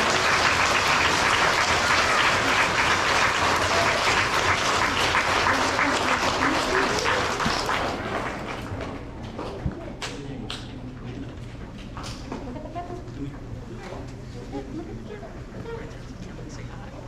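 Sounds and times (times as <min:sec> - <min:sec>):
audience applauding: 0:00.0 - 0:08.9.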